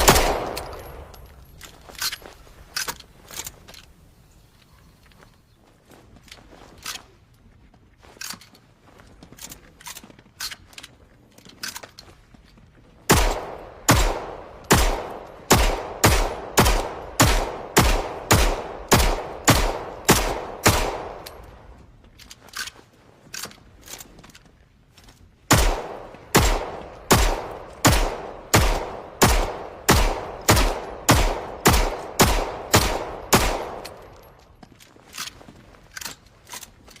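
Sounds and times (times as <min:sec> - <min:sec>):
pistol shots with echo: 0:00.0 - 0:01.2, 0:13.1 - 0:21.5, 0:25.5 - 0:34.3
faint gun clicks: 0:13.1 - 0:24.5, 0:25.7 - 0:37.0.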